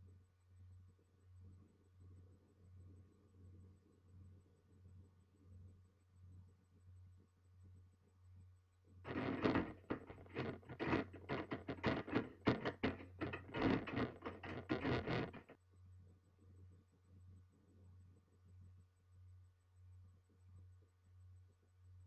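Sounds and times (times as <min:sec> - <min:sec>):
rapid irregular knocking and rustling: 0:09.1 - 0:15.6.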